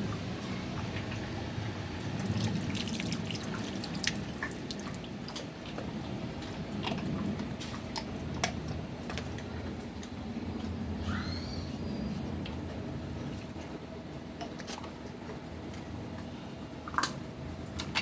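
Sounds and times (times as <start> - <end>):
water dripping and splashing: 1.9 - 8.5.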